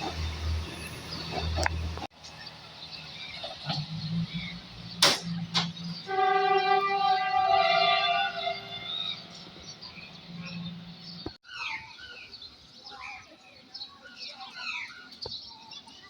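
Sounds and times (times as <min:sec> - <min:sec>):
diesel engine hum: 0:00.0 - 0:11.4
train horn: 0:06.0 - 0:09.2.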